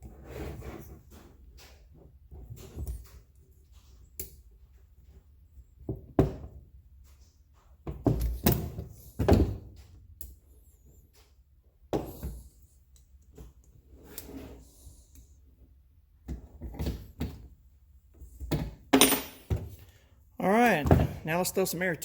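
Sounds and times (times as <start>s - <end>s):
tools clunking on workbench: 18.5s - 19.8s.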